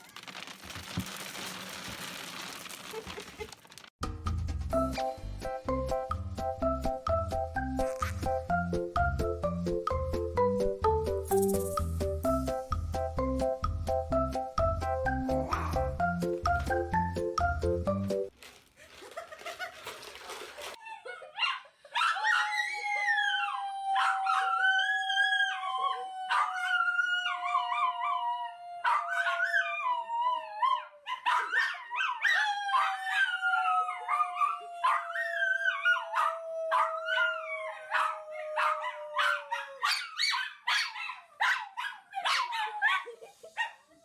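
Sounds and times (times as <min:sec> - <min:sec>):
dog howling: 0:22.0 - 0:40.3.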